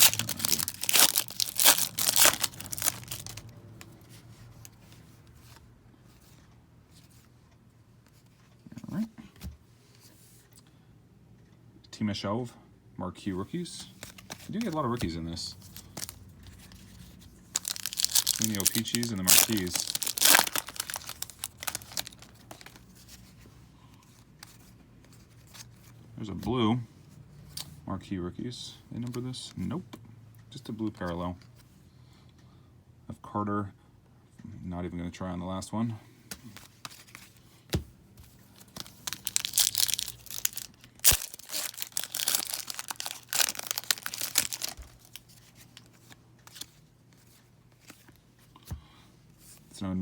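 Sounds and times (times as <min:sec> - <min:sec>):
card wrapper crinkling and tearing: 0:00.0 - 0:04.0, 0:14.0 - 0:16.8, 0:17.4 - 0:23.2, 0:38.6 - 0:46.8.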